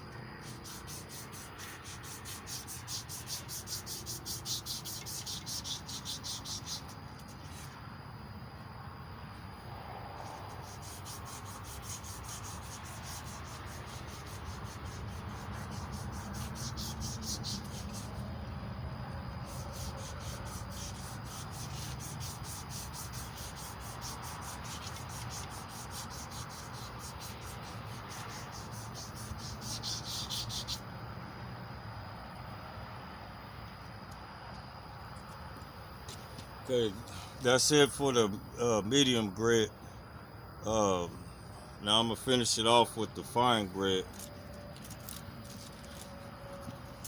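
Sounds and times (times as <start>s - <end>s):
emery cloth rasping on metal: 0.4s - 7.7s, 10.5s - 18.3s, 19.4s - 30.8s.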